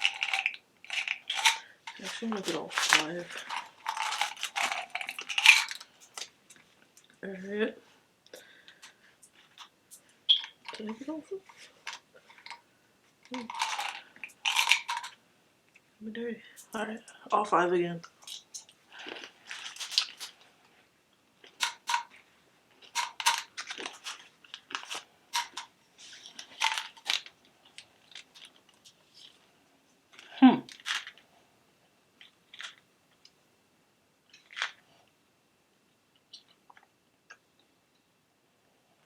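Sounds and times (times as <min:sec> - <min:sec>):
candy crunching while chewing: 0:00.0 - 0:06.3, 0:13.3 - 0:15.2, 0:18.2 - 0:20.4, 0:22.8 - 0:29.4, 0:30.2 - 0:31.2, 0:34.3 - 0:34.8.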